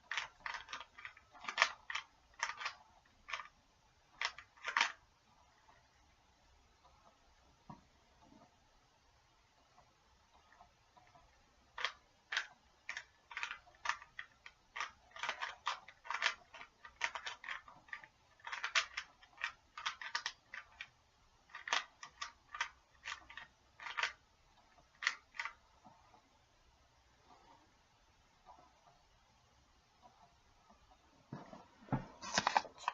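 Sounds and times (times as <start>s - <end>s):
puzzle cube clicks: 0.0s - 3.5s, 4.1s - 5.0s, 11.8s - 20.9s, 21.5s - 24.2s, 24.9s - 25.6s.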